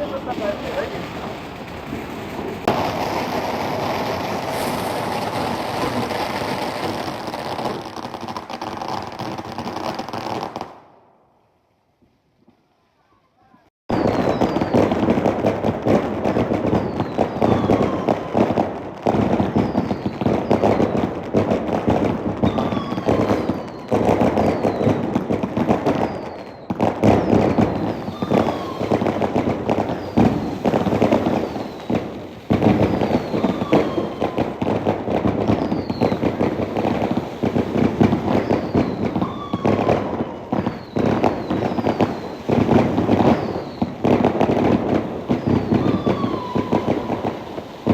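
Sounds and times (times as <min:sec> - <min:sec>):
fireworks crackling and banging: 0:00.0 - 0:47.9
falling whistles: 0:13.9 - 0:14.8, 0:16.8 - 0:18.2, 0:19.5 - 0:21.0, 0:22.4 - 0:25.0, 0:25.9 - 0:34.6, 0:35.5 - 0:36.6, 0:38.2 - 0:44.0, 0:45.3 - 0:47.9.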